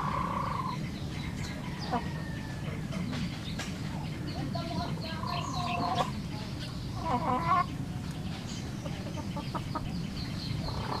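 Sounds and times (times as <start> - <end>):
rooster clucking: 0.0 - 0.8, 7.0 - 7.8.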